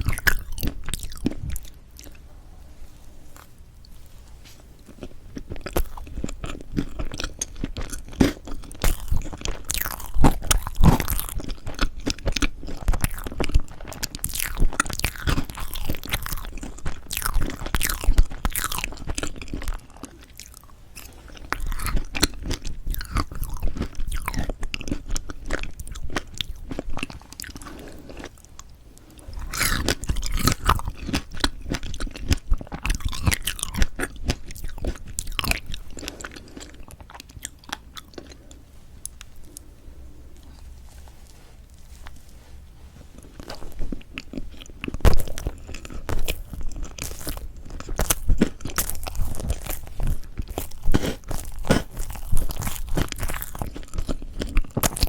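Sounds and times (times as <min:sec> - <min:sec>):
close chewing and mouth smacks: 0:00.0 - 0:02.3, 0:03.3 - 0:39.7, 0:40.3 - 0:55.0.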